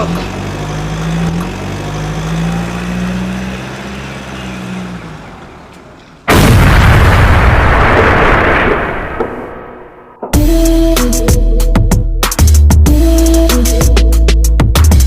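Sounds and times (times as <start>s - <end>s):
truck engine drone: 0.0s - 7.2s
loud explosion blast: 6.3s - 10.1s.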